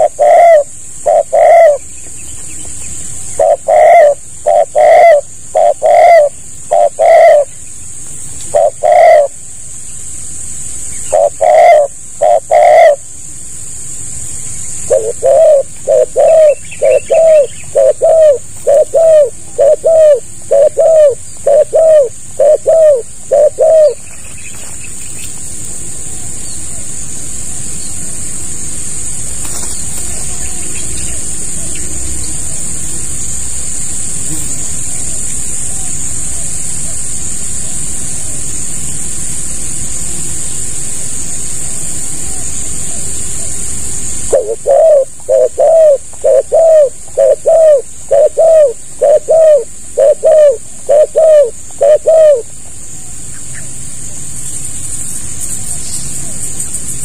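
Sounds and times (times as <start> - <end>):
dove cooing: 0.0 - 7.6, 8.4 - 9.5, 11.0 - 13.1, 14.8 - 25.0, 42.1 - 53.6
high-pitched hiss: 0.0 - 57.0.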